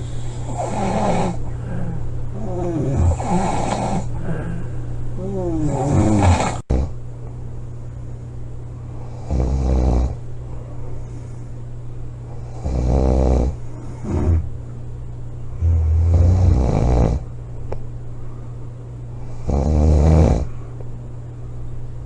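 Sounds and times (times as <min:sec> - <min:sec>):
woman snoring heavily: 0:00.4 - 0:04.6, 0:05.2 - 0:06.9, 0:12.5 - 0:14.5, 0:15.6 - 0:17.2, 0:19.4 - 0:20.5.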